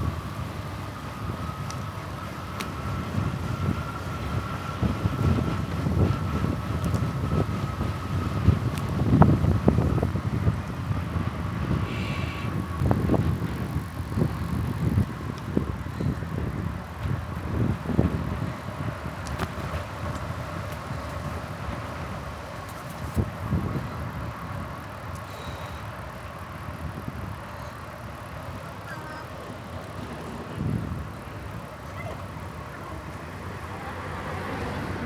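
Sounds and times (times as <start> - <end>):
wind and road rumble: 0.0 - 35.0.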